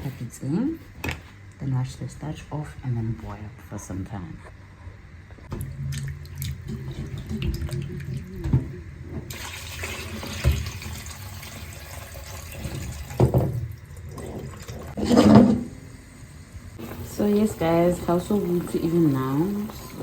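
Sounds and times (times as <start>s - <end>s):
tap running into a sink: 7.2s - 11.1s
knocks against the sink: 13.2s - 13.6s.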